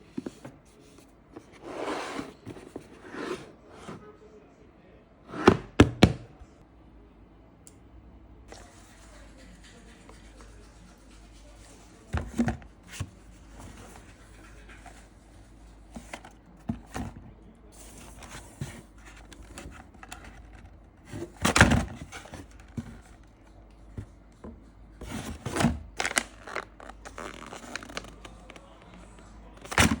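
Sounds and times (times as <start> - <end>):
handling knocks and scrapes: 0.0 - 4.1, 5.3 - 6.3, 12.0 - 28.1.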